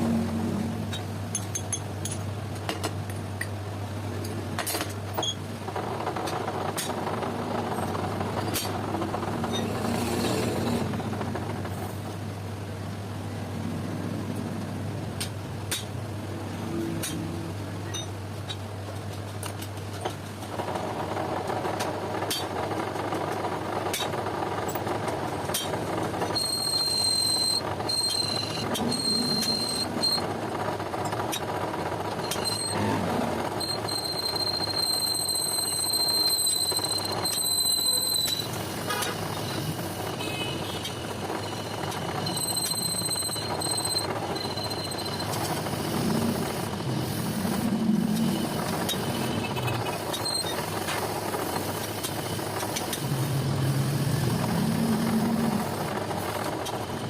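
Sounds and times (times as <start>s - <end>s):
machine running: 20.3s - 57.0s
high-pitched whine: 25.5s - 30.3s, 31.0s - 57.0s.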